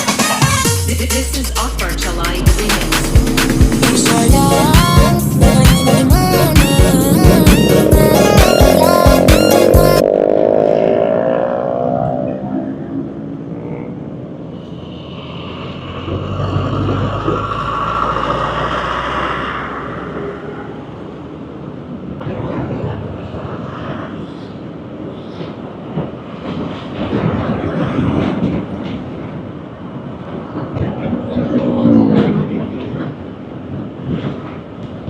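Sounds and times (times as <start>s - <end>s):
vehicle passing: 1.4s - 22.0s, 31.1s - 33.2s.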